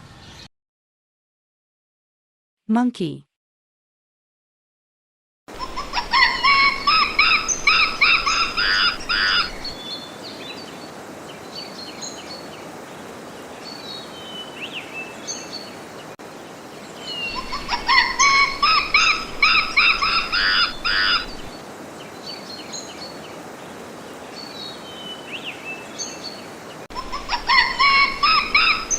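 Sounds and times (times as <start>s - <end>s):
monkey calling: 5.5s - 9.8s, 17.3s - 21.5s, 26.9s - 28.9s
background hiss: 5.5s - 28.9s
bird chirps: 5.6s - 10.0s, 17.0s - 21.5s, 27.0s - 28.9s.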